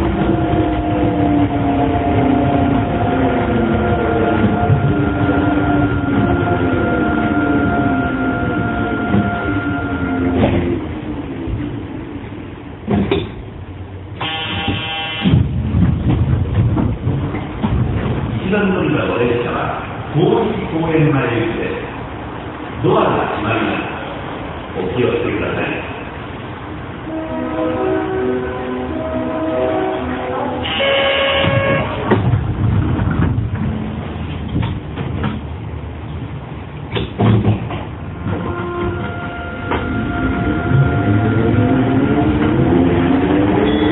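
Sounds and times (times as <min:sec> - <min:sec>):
departure melody tones: 0:00.0 - 0:10.8, 0:38.2 - 0:43.9
low train rumbling: 0:00.0 - 0:43.9
train doors shutting thud: 0:08.7 - 0:10.9, 0:12.8 - 0:13.5, 0:14.2 - 0:18.3, 0:30.6 - 0:35.5, 0:36.8 - 0:41.2
door buzzer: 0:14.2 - 0:15.2
low uneven rumble with knocks: 0:15.3 - 0:18.4.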